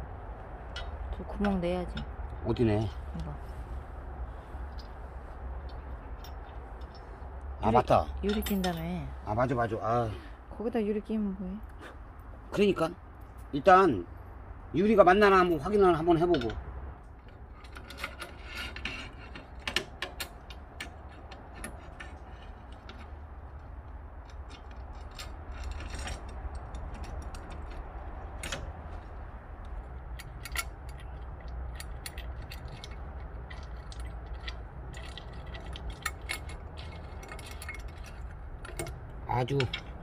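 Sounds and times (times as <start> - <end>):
metal parts clicking: 17.2 - 29.1, 29.8 - 40.0.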